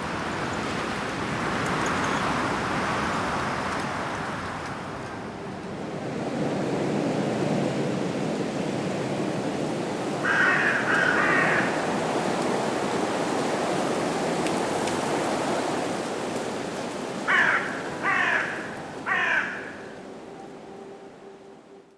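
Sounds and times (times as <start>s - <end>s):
wind in trees: 0.0s - 21.9s
crow cawing: 10.2s - 11.9s, 17.3s - 20.0s.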